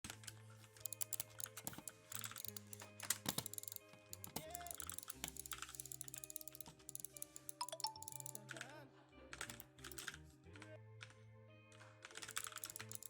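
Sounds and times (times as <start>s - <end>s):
background music: 0.0s - 13.0s
keyboard key clicks: 0.9s - 8.5s, 12.2s - 13.0s.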